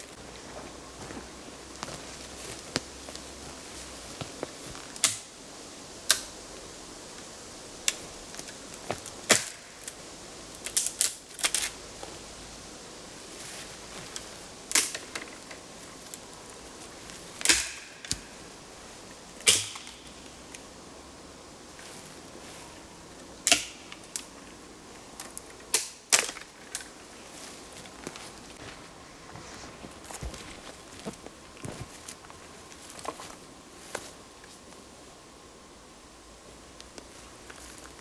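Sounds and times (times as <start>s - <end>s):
dry wood snapping: 4.2s - 5.3s, 6.1s - 6.4s, 7.8s - 10.0s, 10.6s - 12.1s, 14.0s - 18.5s, 19.4s - 20.7s, 23.4s - 24.4s, 25.2s - 27.1s.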